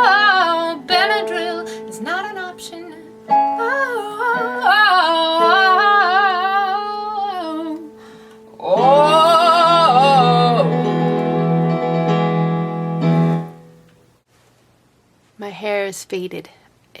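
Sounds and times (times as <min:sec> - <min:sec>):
woman singing wordless notes: 0:00.0 - 0:11.6.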